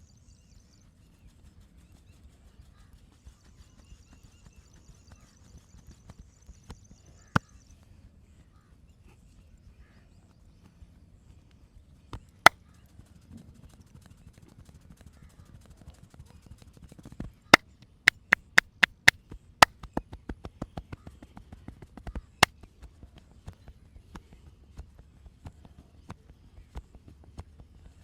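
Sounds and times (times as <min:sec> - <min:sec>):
hands striking body: 0:18.1 - 0:19.1
light hand taps: 0:18.1 - 0:19.1.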